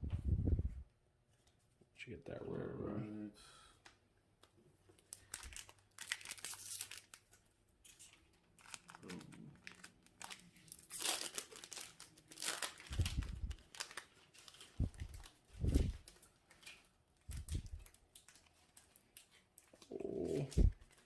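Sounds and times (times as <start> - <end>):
foil wrapper crinkling and tearing: 4.9 - 21.0.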